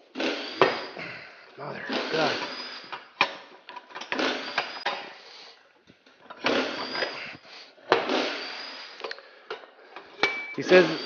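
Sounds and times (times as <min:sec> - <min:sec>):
impact wrench bursts: 0:00.0 - 0:05.3, 0:06.3 - 0:09.2, 0:10.0 - 0:11.0.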